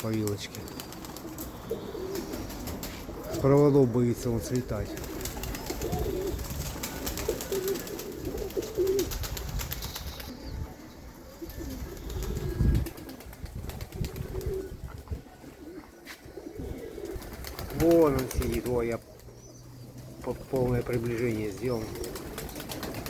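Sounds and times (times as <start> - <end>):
pigeons cooing: 0.0 - 23.0.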